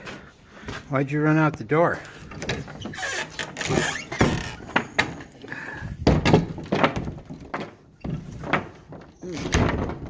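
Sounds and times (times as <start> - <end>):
barn door banging: 2.3 - 10.0.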